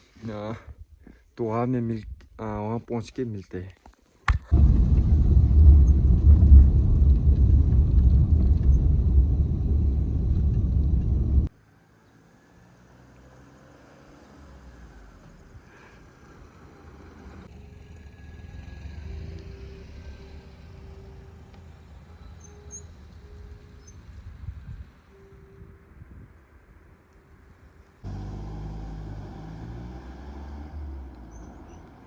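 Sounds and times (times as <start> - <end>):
vehicle rumbling: 4.5 - 11.5, 14.4 - 24.8, 28.0 - 32.0
faint steady tones: 4.6 - 11.5.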